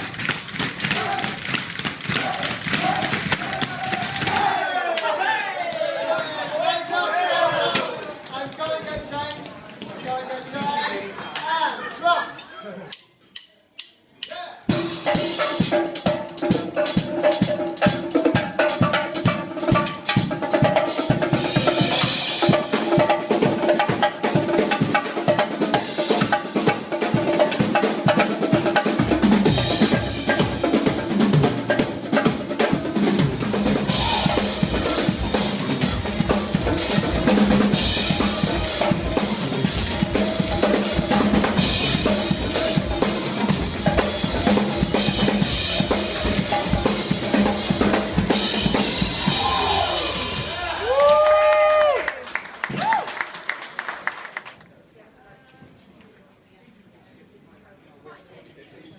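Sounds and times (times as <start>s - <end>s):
fast drum hits: 0.0s - 4.5s, 14.7s - 50.8s
live band playing: 14.1s - 51.2s.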